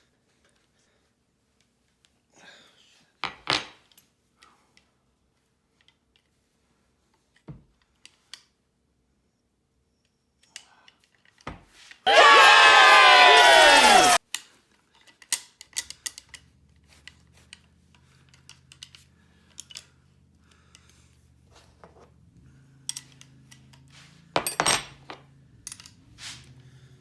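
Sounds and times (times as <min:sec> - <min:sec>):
metallic clicks of hand tools: 0:14.3 - 0:21.0, 0:22.9 - 0:24.6, 0:25.6 - 0:26.0.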